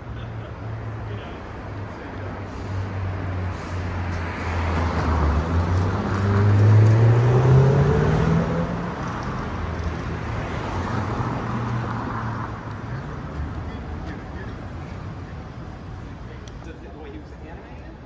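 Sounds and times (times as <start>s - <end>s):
street traffic: 0.0s - 18.0s
vehicle engine accelerating: 2.4s - 15.8s.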